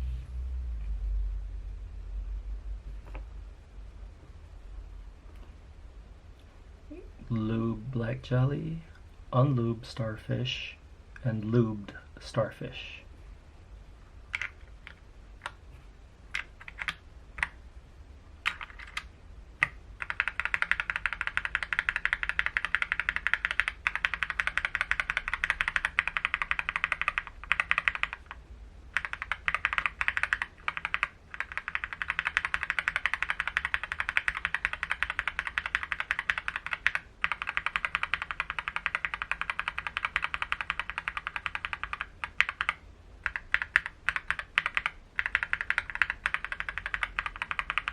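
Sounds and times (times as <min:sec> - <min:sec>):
mechanical keyboard typing: 0:14.3 - 0:15.6, 0:16.3 - 0:17.6, 0:18.4 - 0:47.9.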